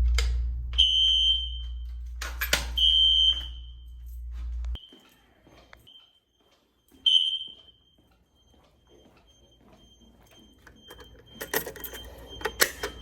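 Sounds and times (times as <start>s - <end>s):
faint high beep: 4.8s - 13.0s.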